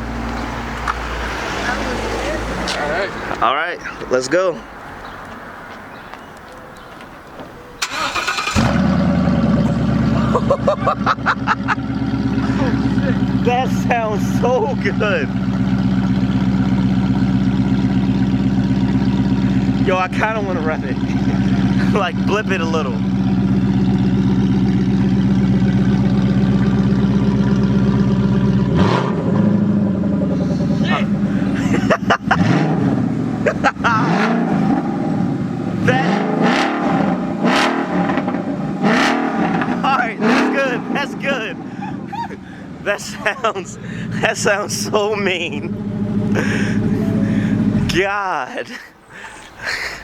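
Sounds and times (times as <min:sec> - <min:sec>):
engine cranking and starting: 0:07.8 - 0:10.1
loud open exhaust engine: 0:07.8 - 0:48.0
engine throttle blip: 0:45.4 - 0:48.0.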